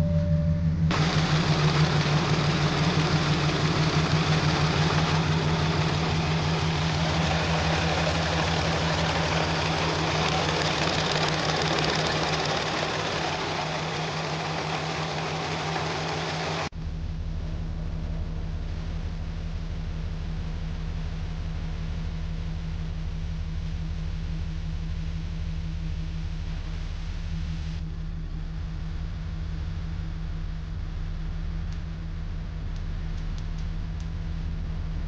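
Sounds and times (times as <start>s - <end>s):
car engine idling unevenly: 0.0s - 16.7s.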